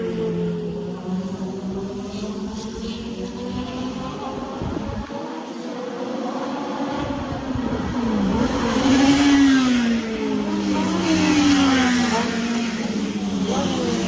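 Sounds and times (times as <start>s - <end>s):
race car engines passing: 0.0s - 14.0s.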